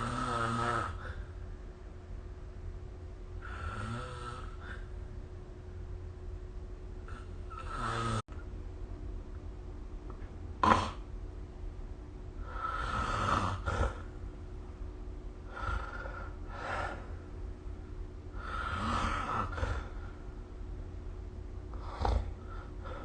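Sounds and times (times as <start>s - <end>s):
loud snort: 0.0s - 1.2s, 7.1s - 8.2s, 10.6s - 11.0s, 12.5s - 14.1s, 18.4s - 20.0s, 21.8s - 23.0s
person snoring: 0.0s - 1.3s, 3.4s - 4.9s, 7.1s - 8.2s, 10.6s - 11.0s, 12.4s - 14.1s, 15.4s - 17.1s, 18.4s - 20.0s, 21.7s - 23.0s.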